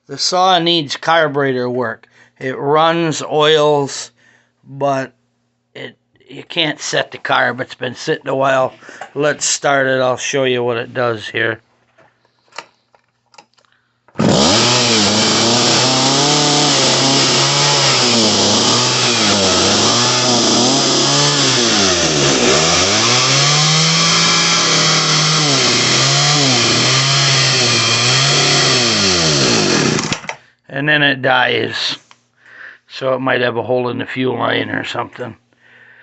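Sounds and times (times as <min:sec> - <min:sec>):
chainsaw revving: 0:14.2 - 0:30.3.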